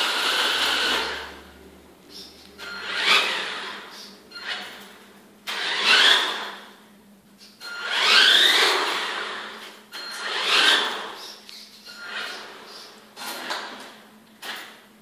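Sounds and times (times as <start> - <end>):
toy car electric motor whining: 0.0 - 1.3, 2.6 - 4.7, 5.5 - 6.4, 7.7 - 9.6, 10.2 - 12.9.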